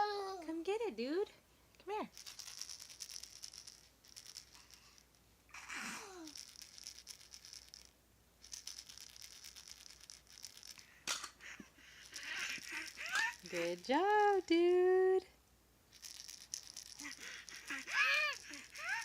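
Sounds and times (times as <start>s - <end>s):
baby rattle shaking: 2.1s - 14.8s, 15.9s - 19.0s
baby squealing: 5.5s - 6.4s, 12.1s - 13.7s, 17.0s - 19.0s.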